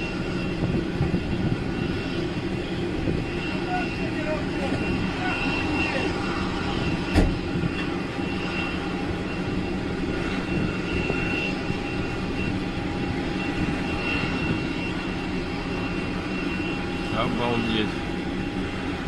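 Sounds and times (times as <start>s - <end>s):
aircraft engine noise: 0.0s - 19.0s
sudden thump: 7.1s - 7.4s.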